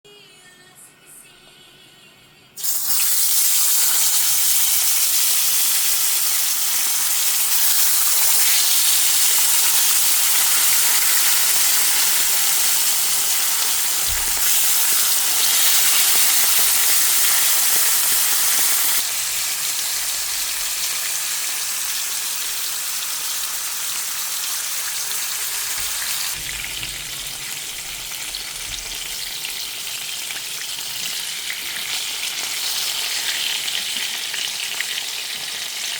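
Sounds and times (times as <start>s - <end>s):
fish sizzling in hot oil: 2.6s - 35.9s
low knock: 26.4s - 29.3s.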